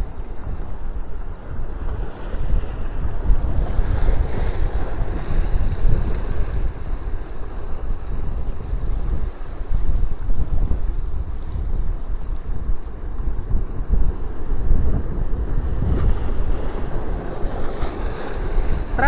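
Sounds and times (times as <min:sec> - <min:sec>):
wind buffeting microphone: 0:00.0 - 0:19.0
sea surf breaking: 0:13.0 - 0:19.0.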